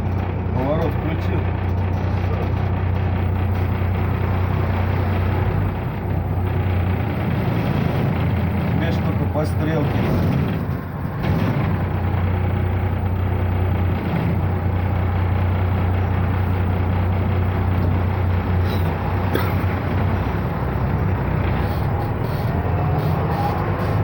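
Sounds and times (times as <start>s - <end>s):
bus diesel engine idling: 0.0s - 24.0s
low hum: 0.0s - 24.0s.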